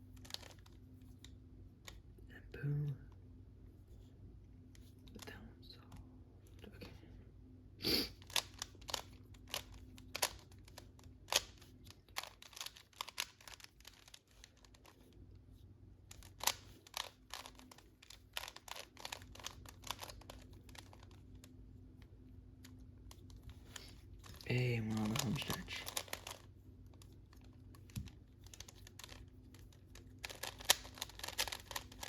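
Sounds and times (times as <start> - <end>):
puzzle cube clicking: 0.2 - 2.0, 8.2 - 15.0, 16.1 - 21.5, 22.6 - 26.4, 27.5 - 32.0.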